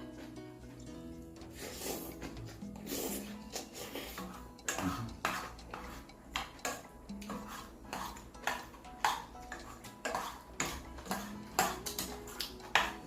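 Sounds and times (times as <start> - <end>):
spoon and chopsticks clinking on bowl: 3.2 - 13.0.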